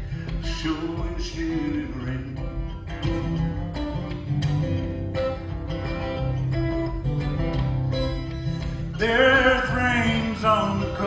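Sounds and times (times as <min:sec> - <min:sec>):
acoustic guitar plucking: 0:00.0 - 0:11.0.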